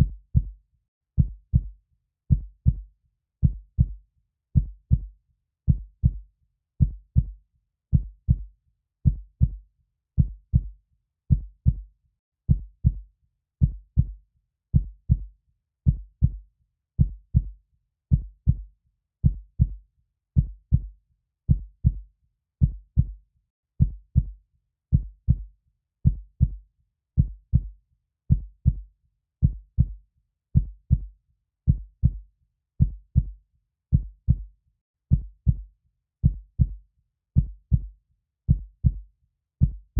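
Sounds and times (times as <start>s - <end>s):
heartbeat thuds: 0.0s - 0.5s, 1.2s - 1.7s, 2.3s - 2.8s, 3.4s - 4.0s, 4.6s - 5.1s, 5.7s - 6.2s, 6.8s - 8.5s, 9.1s - 9.6s, 10.2s - 10.7s, 11.3s - 11.8s, 12.5s - 13.0s, 13.6s - 14.2s, 14.8s - 15.3s, 15.9s - 16.4s, 17.0s - 17.5s, 18.1s - 18.6s, 19.2s - 19.8s, 20.4s - 20.9s, 21.5s - 22.0s, 22.6s - 23.2s, 23.8s - 26.6s, 27.2s - 27.7s, 28.3s - 28.8s, 29.4s - 30.0s, 30.6s - 31.1s, 31.7s - 32.2s, 32.8s - 34.5s, 35.1s - 36.8s, 37.4s - 37.9s, 38.5s - 39.0s, 39.6s - 39.9s.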